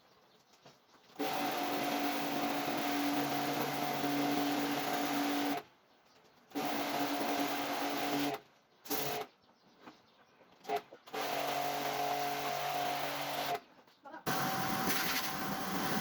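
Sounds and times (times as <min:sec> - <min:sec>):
electric motor humming and hissing: 0:14.3 - 0:16.0.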